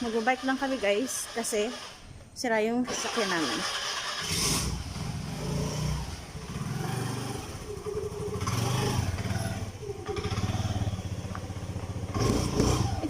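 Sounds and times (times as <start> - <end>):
motorcycle engine idling: 4.8 - 13.0.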